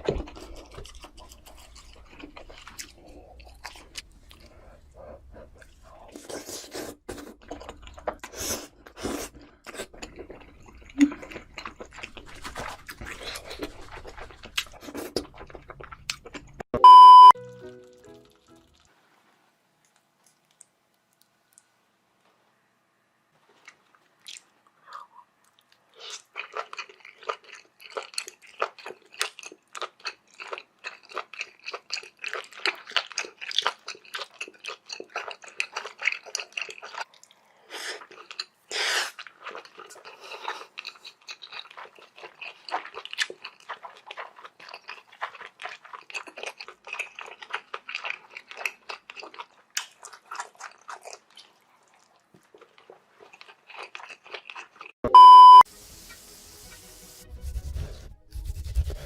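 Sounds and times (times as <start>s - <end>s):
wet crunchy chewing: 0.0s - 17.3s, 23.5s - 55.6s.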